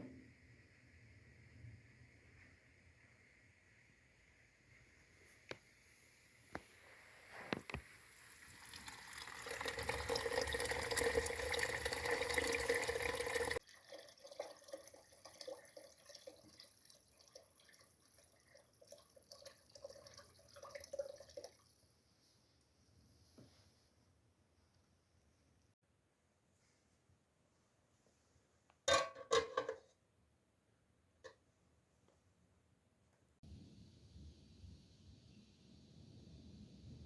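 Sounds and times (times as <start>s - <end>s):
water pouring into vessel: 8.2s - 21.7s.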